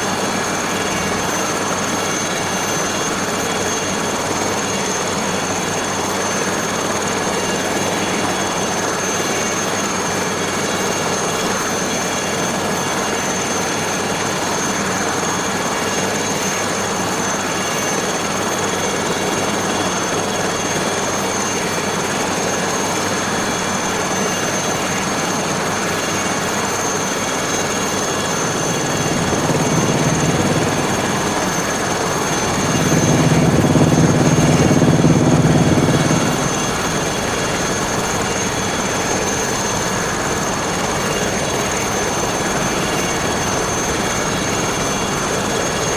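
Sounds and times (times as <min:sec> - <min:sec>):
helicopter rotor noise: 0:00.0 - 0:45.9
helicopter turbine whine: 0:00.0 - 0:45.9
low hum: 0:27.7 - 0:39.2.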